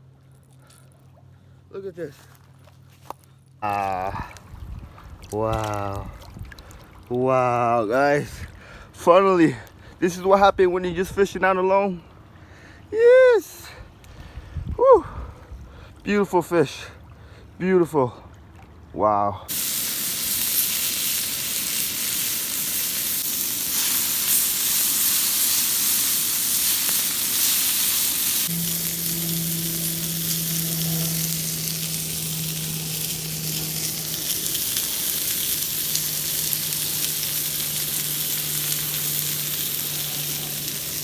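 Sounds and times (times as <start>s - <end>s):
food sizzling in hot oil: 19.5s - 41.0s
low steady hum: 19.5s - 41.0s.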